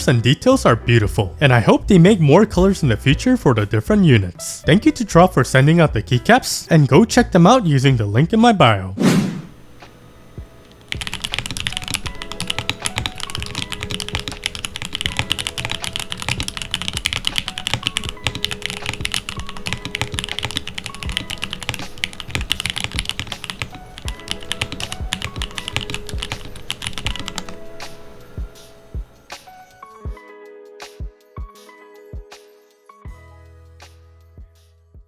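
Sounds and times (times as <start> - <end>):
background music: 0.0 - 35.0
mechanical keyboard typing: 10.6 - 28.1.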